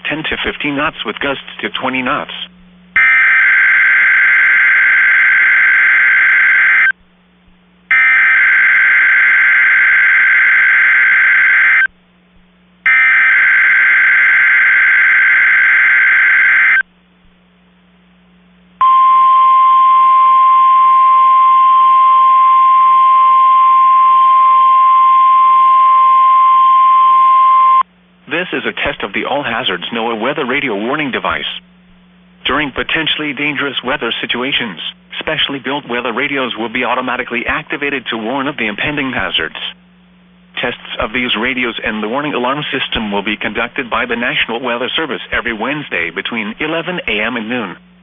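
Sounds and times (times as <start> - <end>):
steady high alarm tone: 3.0 - 7.0, 7.9 - 11.9, 12.9 - 16.8, 18.8 - 27.8.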